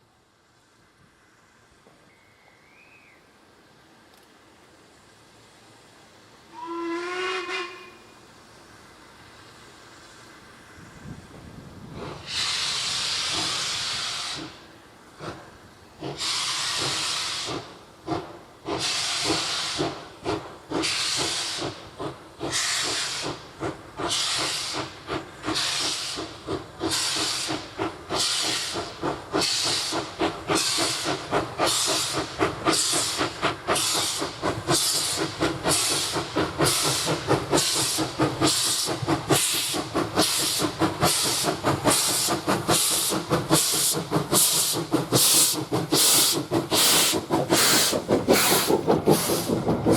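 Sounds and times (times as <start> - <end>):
steam locomotive exhaust beats: 0.2 - 49.9
steam locomotive whistle: 6.5 - 8.2.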